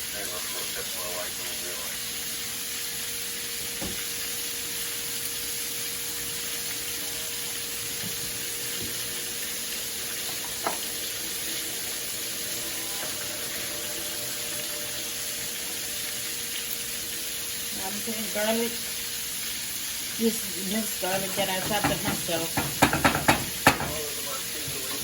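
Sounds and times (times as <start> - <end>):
butter sizzling in a pan: 0.0 - 25.0
sharp knock: 21.8 - 24.0.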